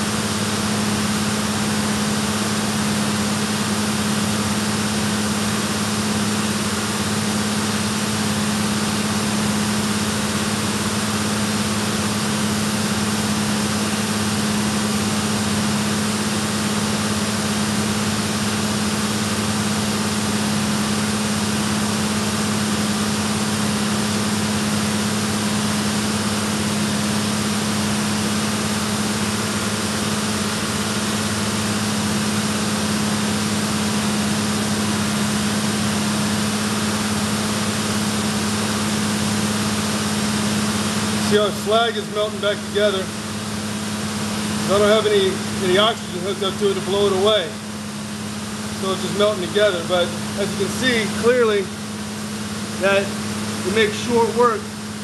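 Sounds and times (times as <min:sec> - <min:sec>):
torch flame hissing: 0:48.8 - 0:51.7.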